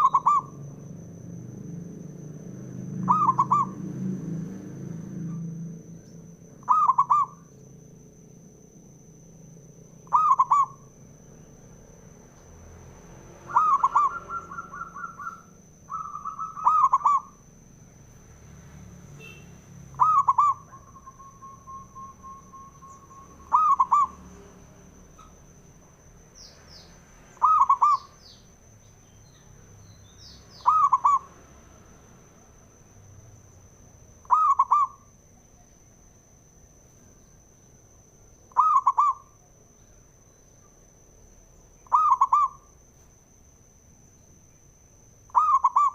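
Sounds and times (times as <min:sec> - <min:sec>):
dove cooing with trills: 0:00.0 - 0:00.6, 0:03.0 - 0:03.8, 0:06.6 - 0:07.4, 0:10.0 - 0:10.9, 0:13.5 - 0:17.4, 0:20.0 - 0:24.2, 0:27.4 - 0:28.1, 0:30.6 - 0:31.3, 0:34.2 - 0:35.0, 0:38.5 - 0:39.3, 0:41.8 - 0:42.6, 0:45.3 - 0:45.9
thin steady high whine: 0:00.0 - 0:45.8.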